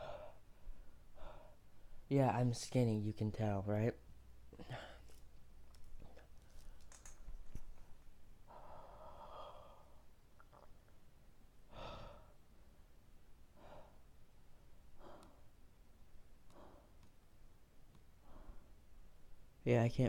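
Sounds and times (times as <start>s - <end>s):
man breathing heavily and sighing: 4.5s - 5.2s, 11.7s - 12.4s
faint clicks: 5.7s - 7.8s.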